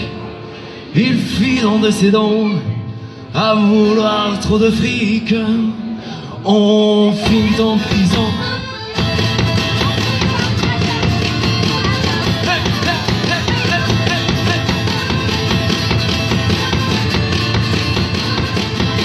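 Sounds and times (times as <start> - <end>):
person singing: 3.4 - 19.0
live band playing rock: 6.7 - 19.0.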